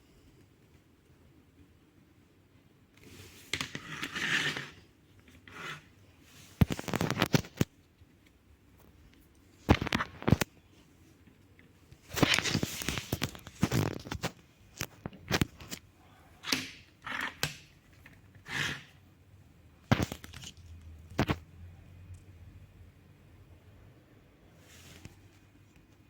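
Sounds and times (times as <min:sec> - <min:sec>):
packaging rustling: 0:12.1 - 0:15.8.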